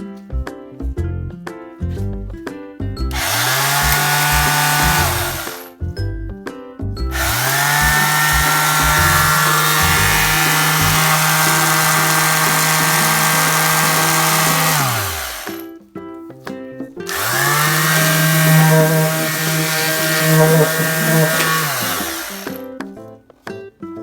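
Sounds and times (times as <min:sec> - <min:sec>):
light background music: 0:00.0 - 0:24.0
cordless drill motor spinning: 0:03.1 - 0:05.7, 0:07.1 - 0:15.6, 0:17.1 - 0:22.7.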